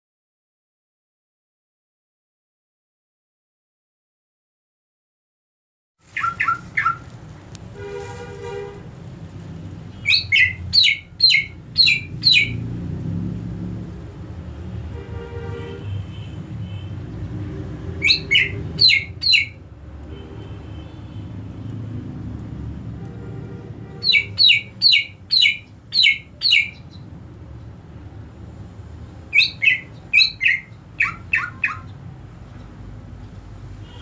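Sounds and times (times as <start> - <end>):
bird chirps sweeping down: 6.1 - 7.0, 10.0 - 12.8, 18.0 - 19.6, 24.0 - 27.1, 29.3 - 31.9
harsh buzzy bird call: 6.1 - 7.1, 9.9 - 12.7, 17.9 - 19.6, 23.6 - 27.2, 29.3 - 32.0.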